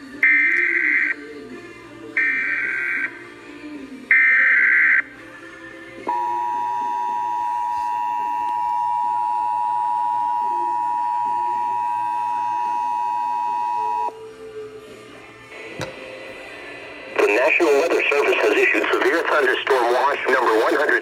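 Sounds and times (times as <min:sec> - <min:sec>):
data burst tones: 0:06.1 - 0:14.1
two-tone attention signal: 0:06.1 - 0:14.2.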